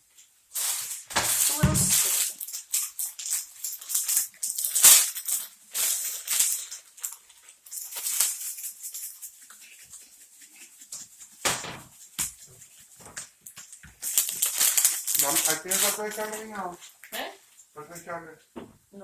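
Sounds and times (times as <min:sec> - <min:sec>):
slime sticky crackling: 0:00.6 - 0:17.2.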